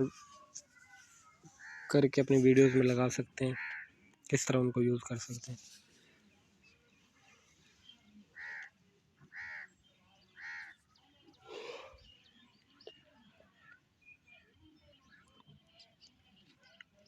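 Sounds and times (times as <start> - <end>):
bird calling: 10.4 - 10.8.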